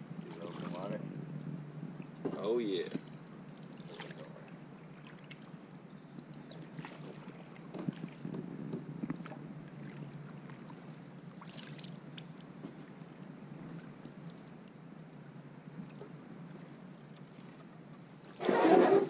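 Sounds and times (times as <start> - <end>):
steady low hum: 0.0 - 19.0
paddles splashing in water: 0.3 - 0.9, 3.6 - 5.6, 6.4 - 8.4, 9.1 - 12.2
light knocks on boat: 2.2 - 3.1, 7.7 - 9.2.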